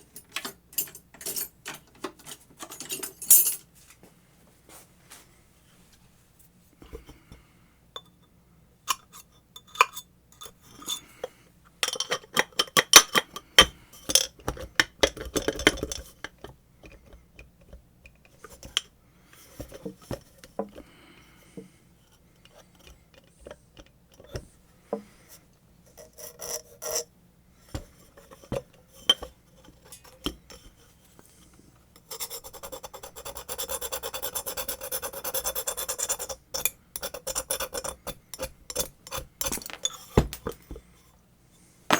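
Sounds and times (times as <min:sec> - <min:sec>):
tools clicking on metal parts: 0:00.1 - 0:03.6, 0:38.4 - 0:40.6.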